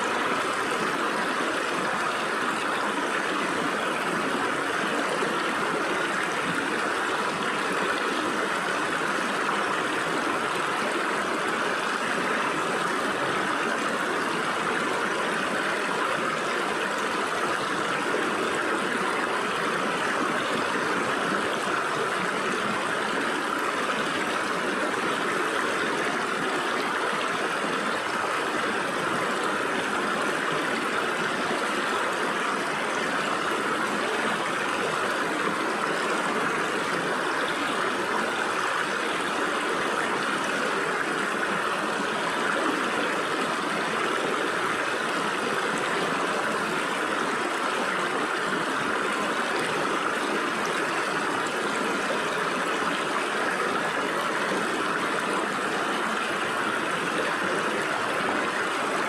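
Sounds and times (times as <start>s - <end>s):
stream babbling over rocks: 0.0s - 59.0s.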